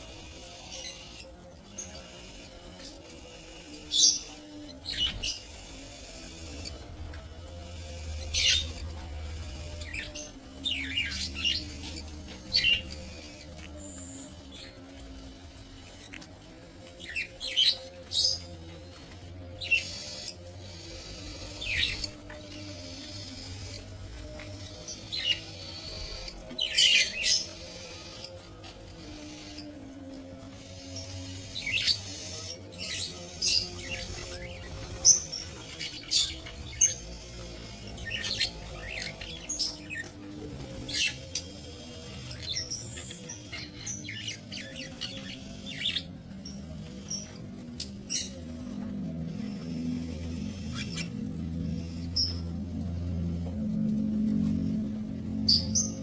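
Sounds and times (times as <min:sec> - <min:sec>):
budgerigars chirping and squawking: 0:00.0 - 0:56.0.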